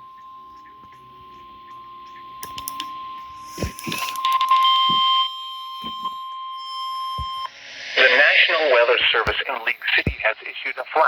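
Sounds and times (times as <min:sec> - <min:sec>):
steady high alarm tone: 0:00.0 - 0:10.3
clicks: 0:02.4 - 0:02.9.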